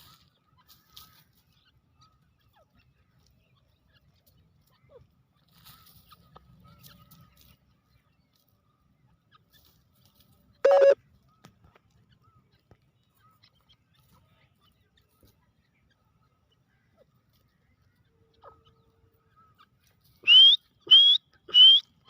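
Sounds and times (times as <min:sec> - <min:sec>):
faint short chirps: 0:10.7 - 0:11.0
francolin ringing call: 0:10.7 - 0:11.0.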